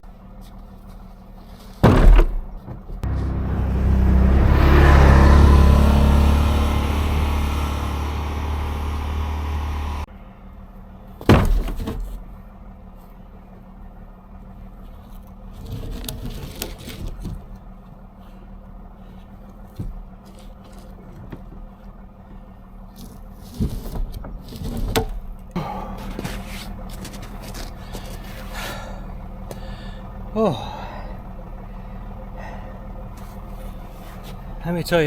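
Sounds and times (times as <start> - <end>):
vehicle engine running: 0.0 - 11.2, 12.1 - 24.4, 25.2 - 35.0
logs knocking and scraping: 0.4 - 10.0, 11.2 - 12.4, 14.8 - 17.8, 22.9 - 30.3, 32.5 - 35.0
heavy thump: 1.8 - 10.0, 11.3 - 12.2.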